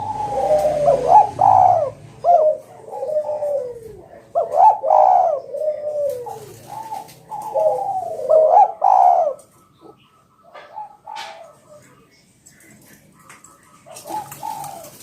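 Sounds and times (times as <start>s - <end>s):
dove cooing: 0.0s - 15.0s.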